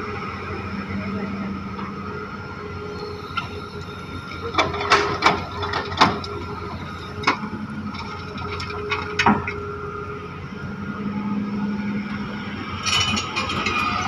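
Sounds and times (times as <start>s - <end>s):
excavator engine running: 0.0s - 14.0s
sharp metallic clanks: 12.8s - 14.0s.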